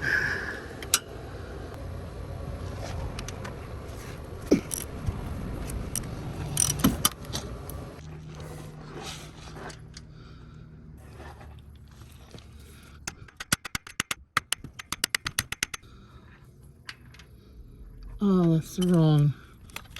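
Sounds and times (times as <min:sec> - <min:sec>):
low rumble: 0:00.0 - 0:13.0, 0:15.9 - 0:19.9
metal tools clinking and scraping: 0:05.6 - 0:10.1, 0:18.3 - 0:19.9.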